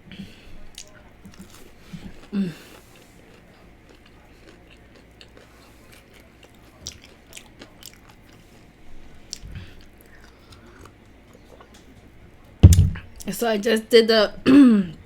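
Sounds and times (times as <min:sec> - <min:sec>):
person chewing food: 0:00.2 - 0:11.8
low thump: 0:12.6 - 0:13.0.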